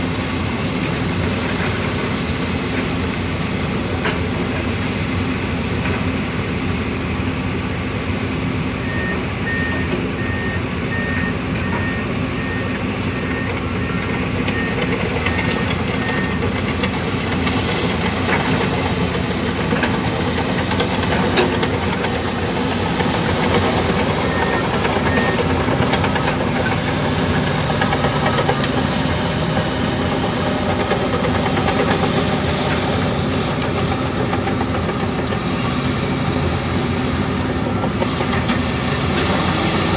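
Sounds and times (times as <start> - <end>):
bulldozer diesel engine: 0.0 - 39.9
alarm beeping: 8.8 - 16.4
steel tracks clanking: 13.4 - 39.9.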